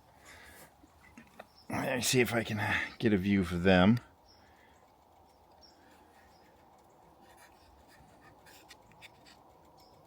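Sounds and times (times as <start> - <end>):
soft ticks or rustles: 3.6 - 10.0.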